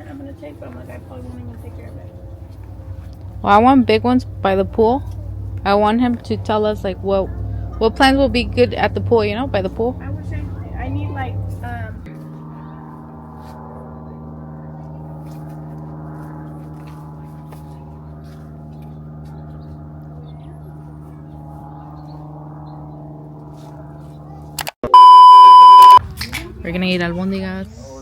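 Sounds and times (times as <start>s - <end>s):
drone of held tones: 1.1s - 16.0s, 24.8s - 26.0s
high single-pitch beep: 24.8s - 26.0s.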